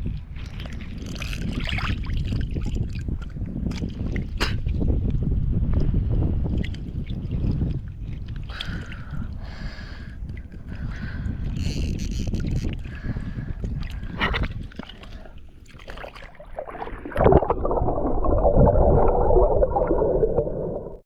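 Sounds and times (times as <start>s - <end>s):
water sloshing underwater: 0.0s - 21.0s.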